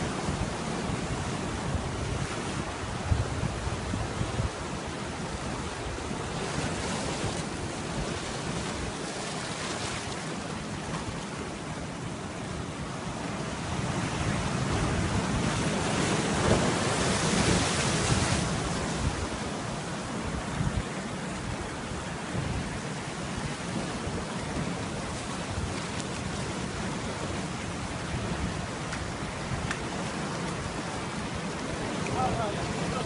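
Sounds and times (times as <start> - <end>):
wind buffeting microphone: 0.0 - 9.8
sea waves breaking: 0.0 - 33.0.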